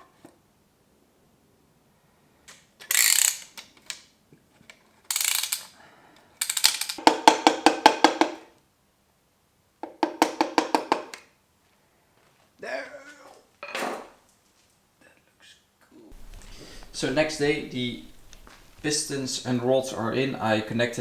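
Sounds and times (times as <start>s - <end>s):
ratchet wrench clicking: 2.8s - 4.0s, 5.1s - 5.8s, 6.4s - 7.0s.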